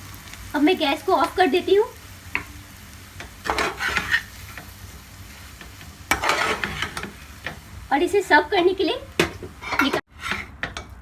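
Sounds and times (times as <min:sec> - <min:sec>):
light sizzle: 0:00.0 - 0:11.0
utensil scraping a pan: 0:03.3 - 0:04.7, 0:05.4 - 0:07.6, 0:09.2 - 0:10.9.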